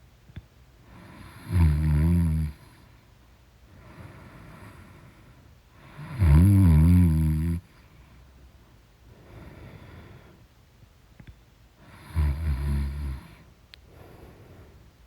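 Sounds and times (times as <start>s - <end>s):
woman snoring: 0.9s - 2.6s, 5.8s - 7.7s, 11.8s - 13.5s
soft breathing: 2.6s - 6.2s, 7.6s - 10.6s, 13.1s - 15.0s.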